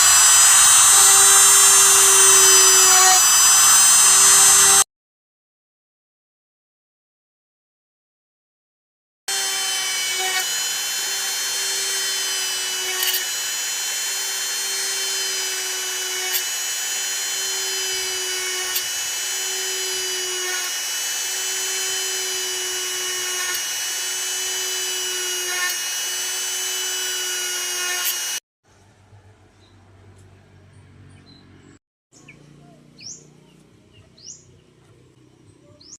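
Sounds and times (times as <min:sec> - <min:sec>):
power drill motor whining: 0:00.0 - 0:04.8, 0:09.3 - 0:28.4.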